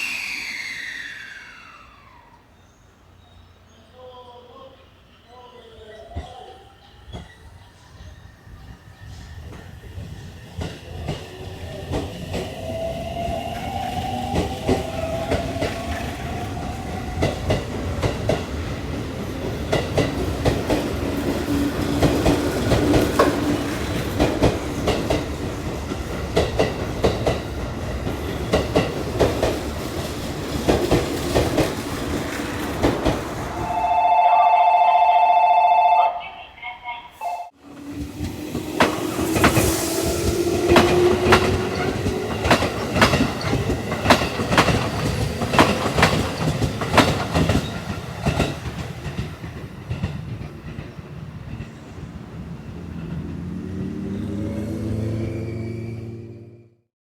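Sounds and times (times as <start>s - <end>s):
whine sliding in pitch: 0.0s - 2.6s, 33.6s - 36.5s
electric train passing: 0.0s - 56.8s
wheels clacking over rail joints: 13.6s - 33.8s, 37.7s - 51.8s
loud steady two-tone sound: 33.6s - 37.6s.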